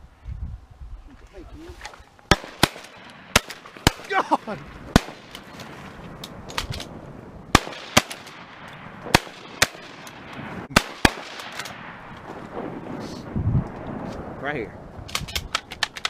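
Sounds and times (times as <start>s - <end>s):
shotguns firing: 2.3s - 4.2s, 4.9s - 5.7s, 7.5s - 12.1s.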